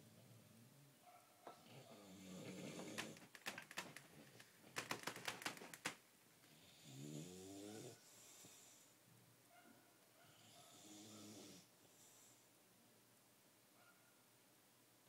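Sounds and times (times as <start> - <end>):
dog snoring: 1.6 - 3.2, 6.6 - 8.8, 10.3 - 12.4
sharp clicks: 2.8 - 6.0.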